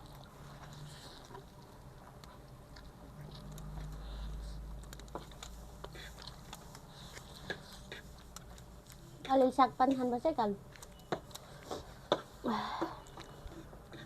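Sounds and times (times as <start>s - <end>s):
chewing and biting food: 0.0s - 9.1s.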